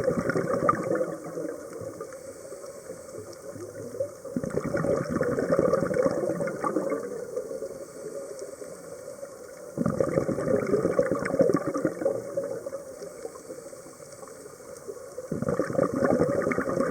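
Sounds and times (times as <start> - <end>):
bubbling exhalation: 0.0 - 1.6, 4.4 - 7.2, 9.8 - 12.8, 15.3 - 16.9.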